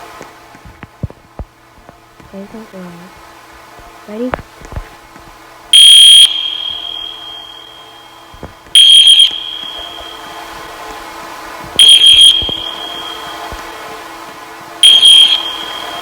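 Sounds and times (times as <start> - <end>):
fire alarm blasts: 5.7 - 16.0.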